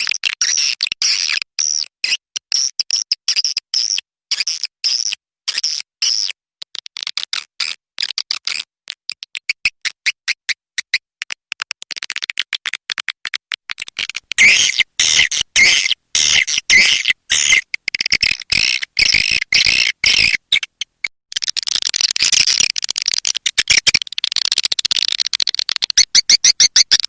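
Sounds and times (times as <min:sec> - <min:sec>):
swiftlet chirping trills: 0:14.4 - 0:20.8.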